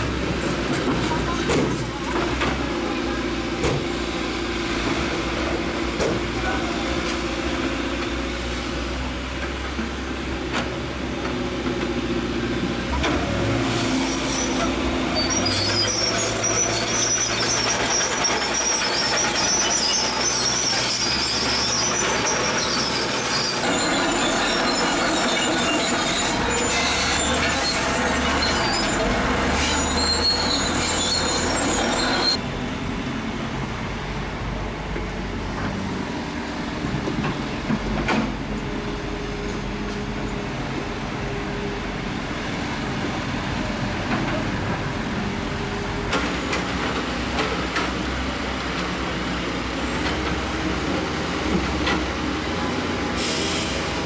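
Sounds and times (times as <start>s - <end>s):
diesel engine under load: 0.0s - 54.0s
metal tracks squealing: 12.9s - 32.4s, 45.8s - 54.0s.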